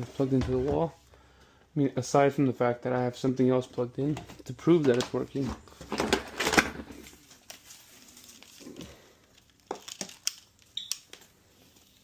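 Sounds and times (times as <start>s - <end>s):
rustling handling noise: 4.0s - 12.0s.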